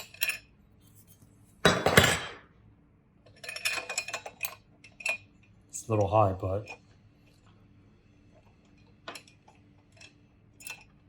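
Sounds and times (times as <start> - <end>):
metal hardware clattering: 1.6 - 2.4.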